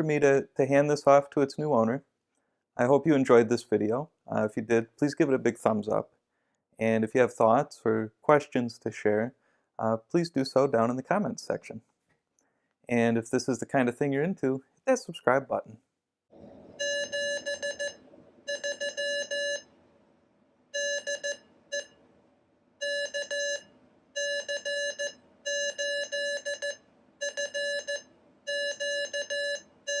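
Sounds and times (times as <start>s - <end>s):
morse code beeping: 16.8s - 19.6s, 20.8s - 21.9s, 24.2s - 30.0s.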